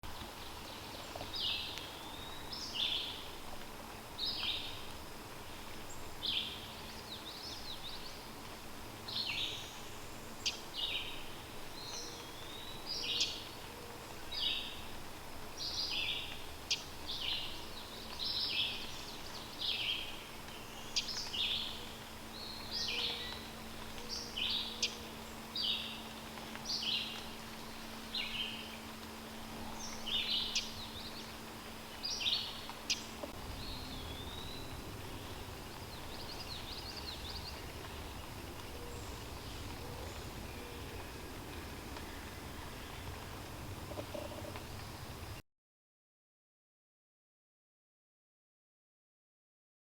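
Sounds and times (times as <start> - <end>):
faint steady hum: 0.1 - 45.4
birds chirping and singing: 32.0 - 45.2.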